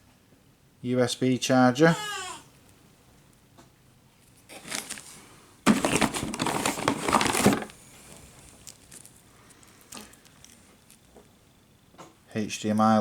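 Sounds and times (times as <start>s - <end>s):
plastic packaging crinkling: 4.5s - 11.1s.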